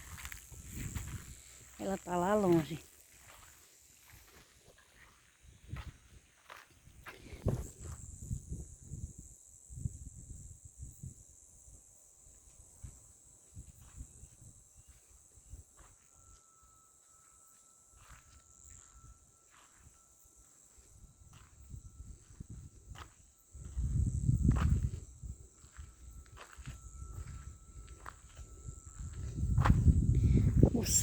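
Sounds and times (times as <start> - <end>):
high-pitched insect buzz: 0.0 - 31.0
lower steady note: 15.6 - 30.6.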